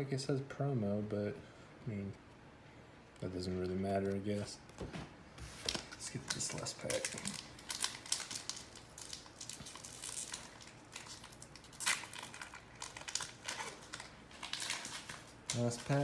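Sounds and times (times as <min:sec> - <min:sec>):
foil wrapper crinkling: 0:05.6 - 0:16.0.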